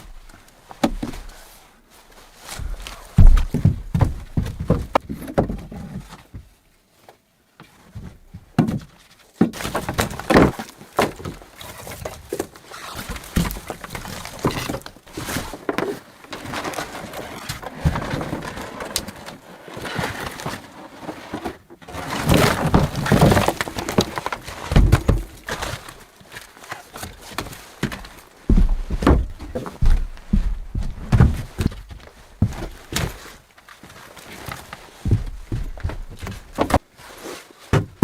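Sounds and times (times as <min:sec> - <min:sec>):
cracking and knocking: 0:03.2 - 0:05.6, 0:09.4 - 0:19.4, 0:21.8 - 0:25.9.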